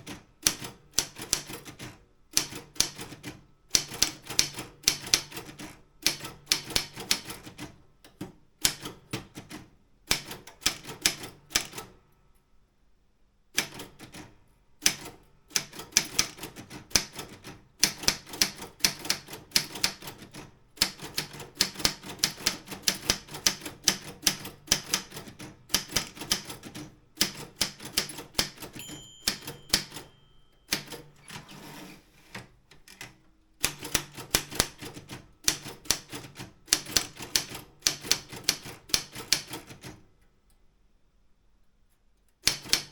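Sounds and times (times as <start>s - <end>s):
typewriter typing: 0.0s - 7.7s, 8.6s - 11.9s, 13.6s - 40.0s, 42.4s - 42.9s
typewriter bell ringing: 28.6s - 31.2s.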